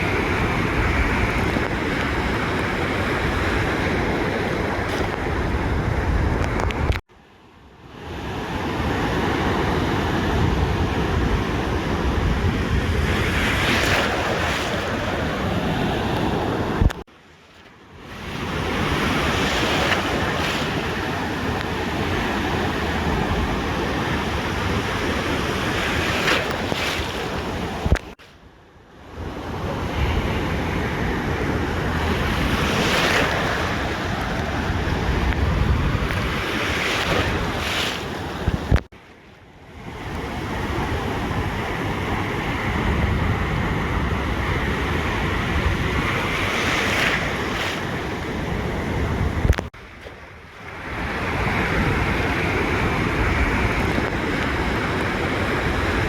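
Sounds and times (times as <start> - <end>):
ocean surf washing onto beach: 0.0 - 7.0, 7.8 - 17.1, 17.8 - 28.4, 29.0 - 56.0
wind buffeting microphone: 0.0 - 7.0, 9.4 - 17.0, 29.2 - 38.9, 39.8 - 56.0.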